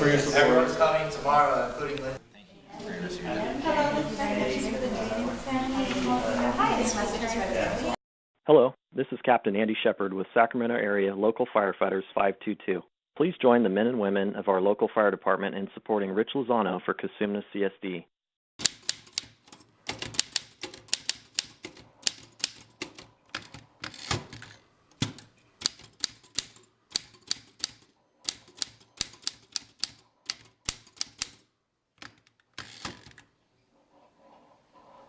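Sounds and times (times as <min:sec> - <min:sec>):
fast keyboard typing: 0:18.6 - 0:31.4.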